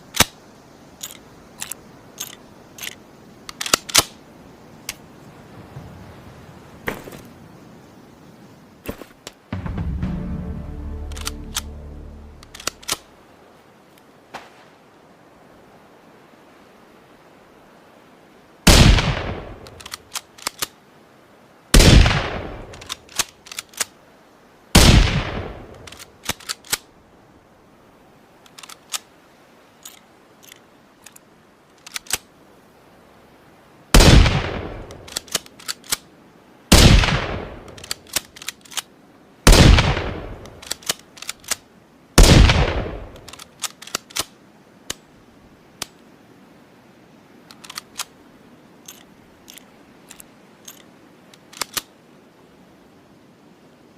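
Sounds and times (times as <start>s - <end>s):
rifle bolt clicking: 1.0s - 4.2s, 12.4s - 13.0s, 19.7s - 20.7s, 43.1s - 44.3s, 47.5s - 48.1s, 48.8s - 51.9s
rifle shots: 34.0s - 34.8s, 36.7s - 37.5s, 39.5s - 40.4s, 42.2s - 43.3s.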